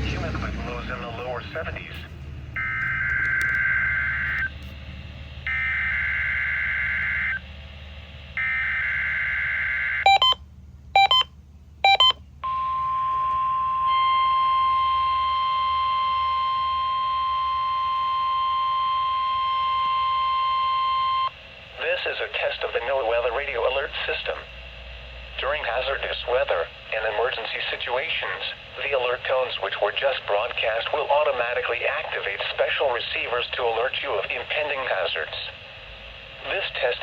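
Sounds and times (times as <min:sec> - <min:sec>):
long steady alert tone: 0:08.4 - 0:10.4, 0:11.0 - 0:21.3
short beeps: 0:10.1 - 0:10.4, 0:11.0 - 0:21.3.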